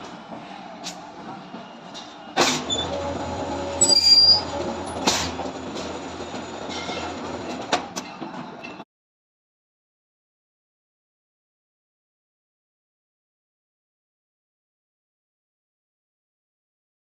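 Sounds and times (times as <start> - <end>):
high metallic squeal: 2.6 - 5.4, 6.7 - 7.2.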